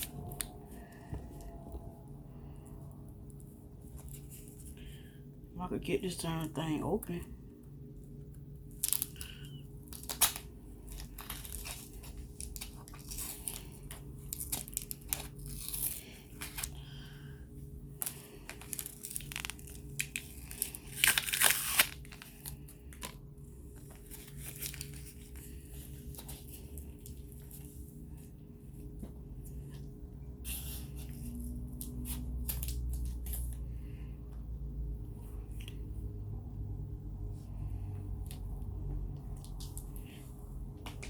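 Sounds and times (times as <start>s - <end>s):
packaging crinkling: 8.6s - 17.1s, 17.9s - 27.9s
tape tearing: 8.7s - 16.8s, 18.0s - 23.2s, 23.9s - 25.3s.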